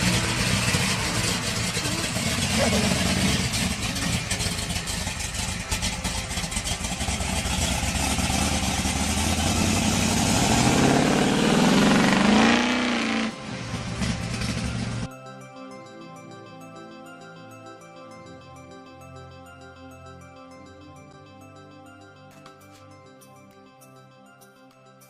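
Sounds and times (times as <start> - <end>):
music: 0.0 - 7.3, 13.1 - 25.0
car engine revving: 0.0 - 15.1.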